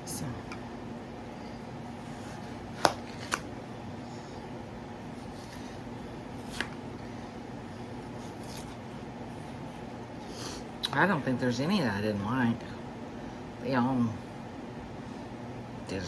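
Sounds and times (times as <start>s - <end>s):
steady hum: 0.0s - 16.0s.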